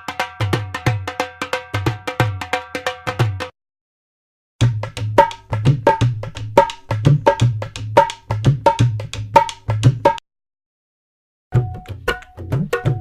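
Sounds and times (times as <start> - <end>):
fast drum beat: 4.6 - 10.2, 11.6 - 13.0.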